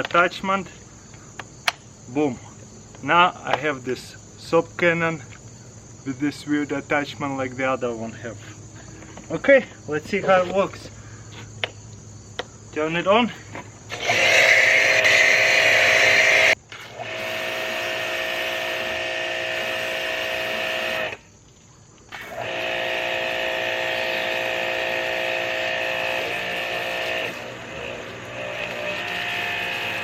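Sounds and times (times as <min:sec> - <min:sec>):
pressure washer whine: 0:13.9 - 0:21.3, 0:22.1 - 0:30.0
water spray hiss: 0:25.4 - 0:30.0.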